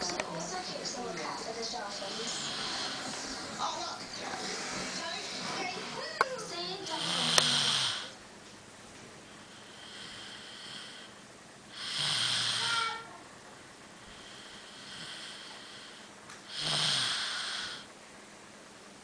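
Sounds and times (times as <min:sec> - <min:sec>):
quiet breaths: 0:00.5 - 0:03.6, 0:04.2 - 0:06.2, 0:09.1 - 0:12.9, 0:13.8 - 0:17.9
person snoring: 0:02.0 - 0:03.6, 0:04.2 - 0:06.1, 0:06.9 - 0:08.2, 0:09.4 - 0:11.1, 0:11.7 - 0:13.0, 0:14.1 - 0:17.9.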